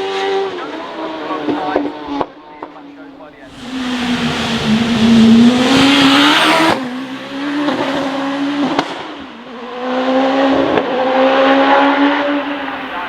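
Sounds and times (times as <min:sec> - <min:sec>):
racing car engine at full throttle: 0:00.0 - 0:02.3, 0:03.4 - 0:13.0.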